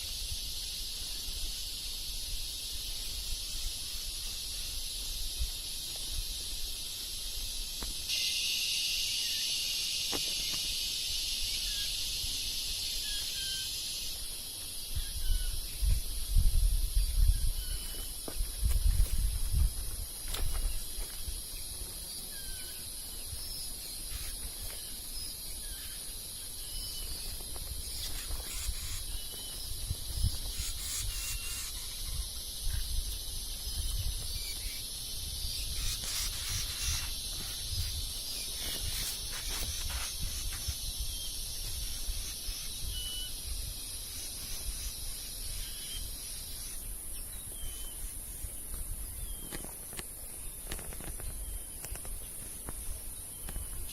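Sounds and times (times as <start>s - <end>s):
high-pitched insect drone: 0.0s - 53.9s
lower insect chorus: 0.0s - 53.9s
bird chirps: 22.3s - 34.8s, 35.4s - 43.5s.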